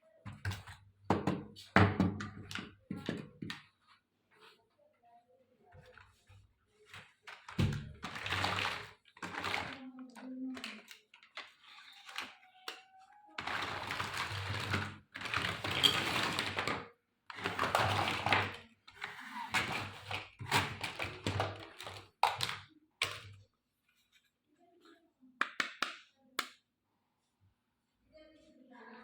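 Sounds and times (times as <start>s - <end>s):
plastic packaging rustling: 5.8s - 23.4s.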